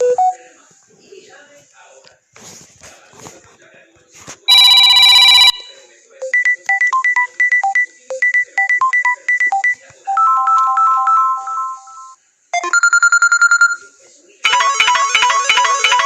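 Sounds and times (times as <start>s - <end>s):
phone ringtone melody: 4.5s - 5.7s, 6.3s - 13.8s, 14.4s - 16.0s.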